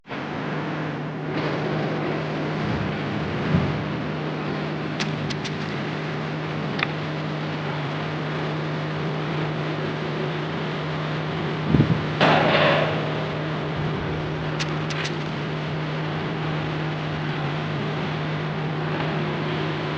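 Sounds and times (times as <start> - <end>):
machine hum: 0.1 - 19.9
sharp clicks: 5.0 - 5.7, 14.6 - 15.3.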